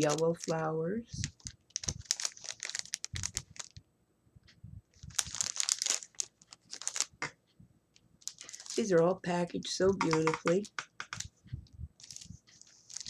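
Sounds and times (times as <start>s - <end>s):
plastic packaging crinkling: 0.0s - 3.8s, 5.0s - 7.3s, 8.2s - 9.0s, 12.0s - 13.0s.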